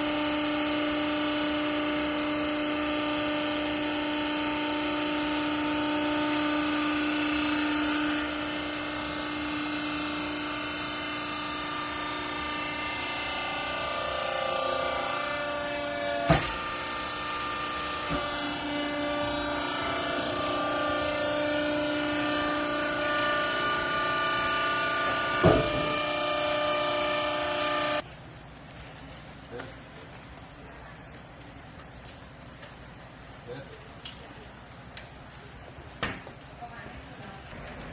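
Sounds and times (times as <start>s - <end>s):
baler motor and pump whining: 0.0s - 28.1s.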